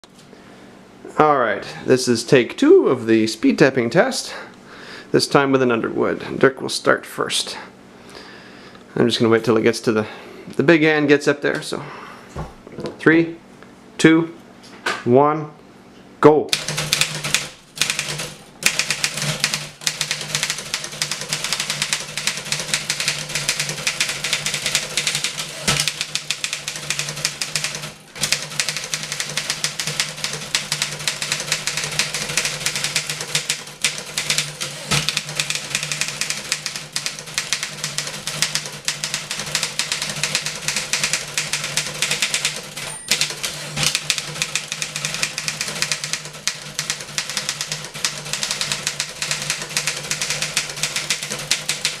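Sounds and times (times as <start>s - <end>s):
typewriter clattering: 16.5s - 52.0s.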